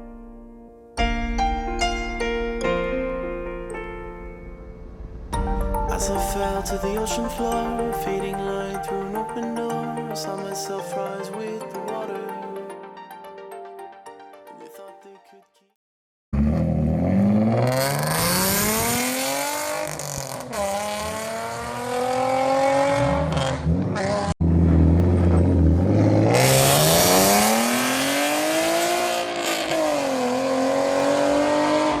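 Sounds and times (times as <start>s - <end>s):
car engine revving: 16.4s - 32.0s.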